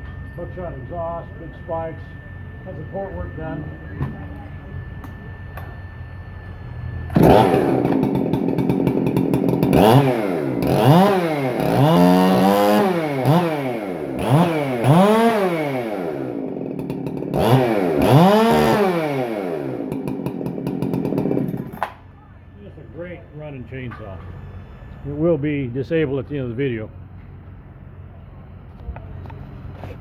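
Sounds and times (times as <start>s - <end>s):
chainsaw revving: 7.1s - 22.0s.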